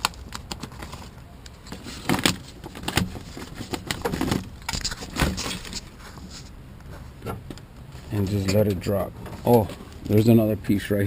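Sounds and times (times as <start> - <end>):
plastic sheet rustling: 0.0 - 6.5.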